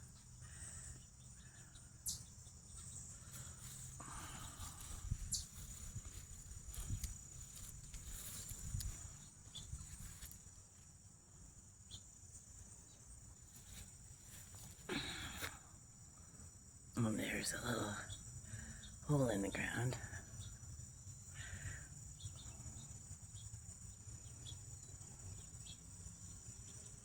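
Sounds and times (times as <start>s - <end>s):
insect trilling: 0.0s - 10.4s.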